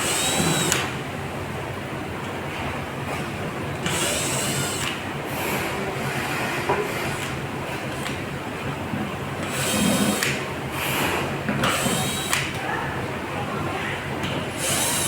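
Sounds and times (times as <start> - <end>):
power screwdriver running: 0.0 - 0.9, 3.8 - 4.9, 9.4 - 10.4, 11.6 - 12.4, 14.6 - 15.0.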